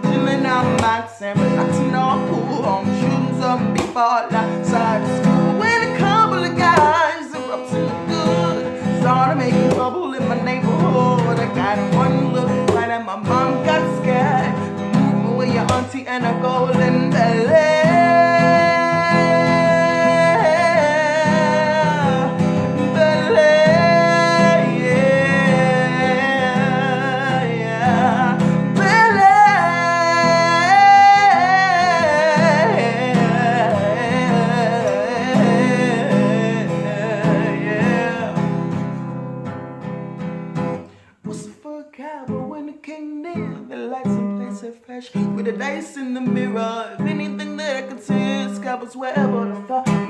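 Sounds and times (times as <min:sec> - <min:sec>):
person singing wordless runs: 0:00.0 - 0:38.4
acoustic guitar: 0:00.0 - 0:50.0.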